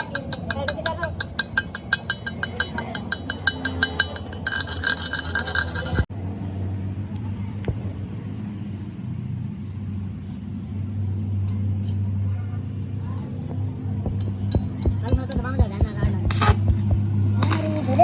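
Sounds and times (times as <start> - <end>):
rapid metallic clinking: 0.0 - 6.1, 14.0 - 18.0.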